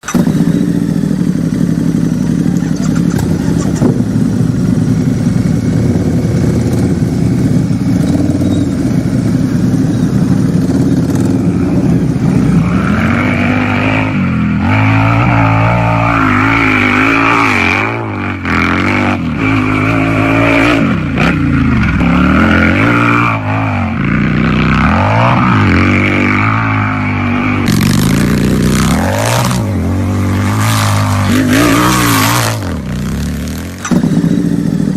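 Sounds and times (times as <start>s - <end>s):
motorcycle engine idling: 0.0s - 13.6s, 27.6s - 31.5s, 32.7s - 34.9s
motorcycle engine revving: 0.0s - 34.9s.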